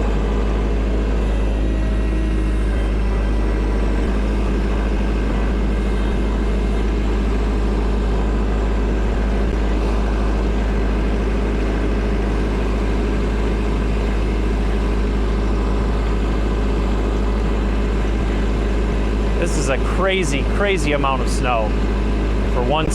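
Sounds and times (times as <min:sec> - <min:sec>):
tractor diesel engine running: 0:00.0 - 0:22.9.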